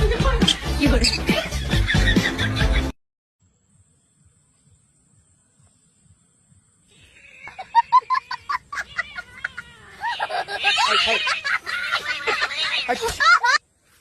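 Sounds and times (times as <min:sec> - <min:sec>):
laughter in short bursts: 0:07.2 - 0:13.6.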